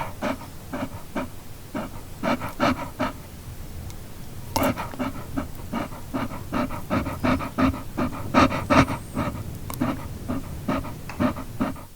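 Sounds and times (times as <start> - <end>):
dog panting: 0.0 - 3.3, 4.5 - 11.9.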